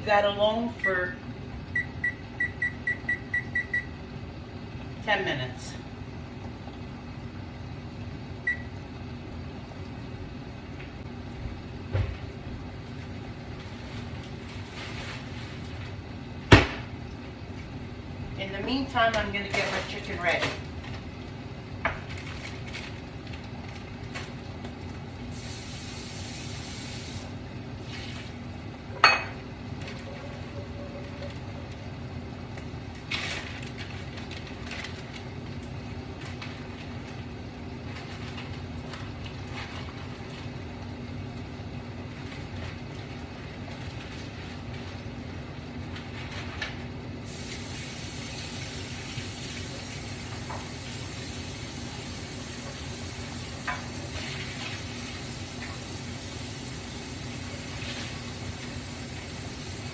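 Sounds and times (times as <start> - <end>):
broth simmering with hiss: 25.2 - 27.9, 47.2 - 59.9.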